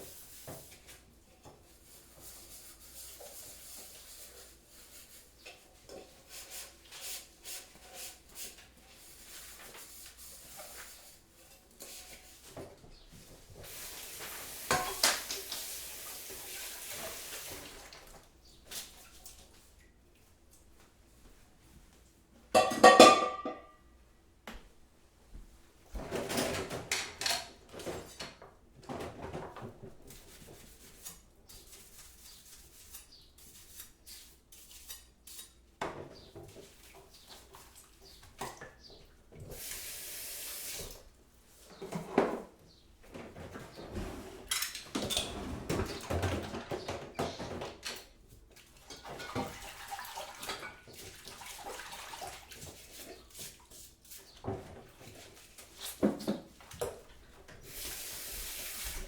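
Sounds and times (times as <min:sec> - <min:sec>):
dishes and cutlery clattering: 0:14.7 - 0:15.4, 0:22.6 - 0:23.8, 0:44.5 - 0:48.0, 0:48.8 - 0:51.0
running water: 0:48.8 - 0:53.4.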